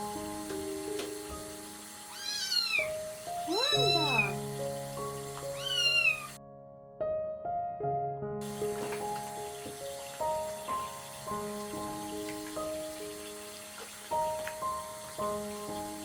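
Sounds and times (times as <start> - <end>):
kitten meowing: 2.1 - 4.4, 5.6 - 6.4.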